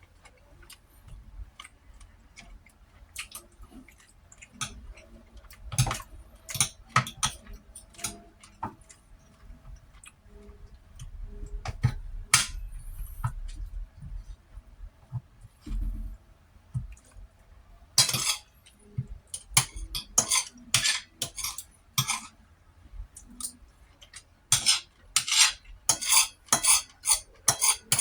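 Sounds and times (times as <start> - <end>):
close chewing with wet smacks: 0.0 - 11.2.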